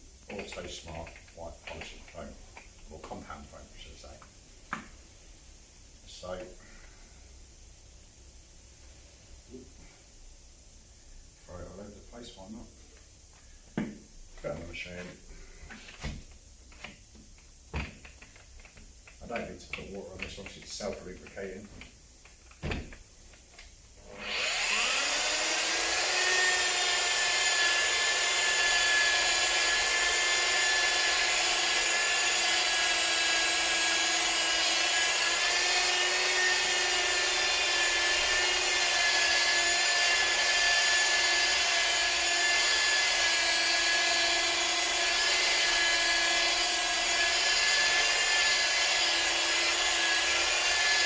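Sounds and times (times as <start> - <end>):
electric polisher whining: 24.0 - 51.0.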